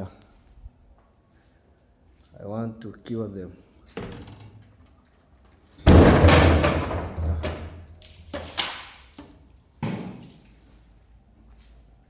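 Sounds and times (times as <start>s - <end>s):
water splashing on cement wall: 7.1s - 9.4s.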